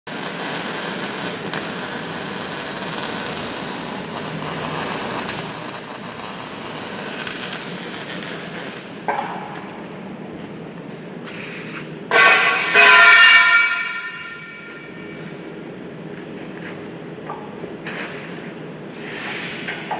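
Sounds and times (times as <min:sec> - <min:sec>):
welder arc crackling: 0:00.1 - 0:09.1.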